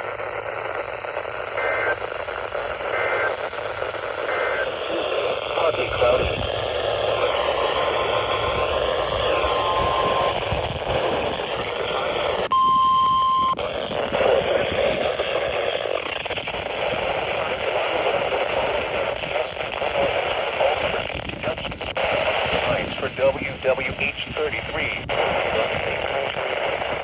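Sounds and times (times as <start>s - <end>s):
radio static: 0.0s - 27.0s
warning alarm tone: 6.2s - 10.8s, 12.5s - 13.6s.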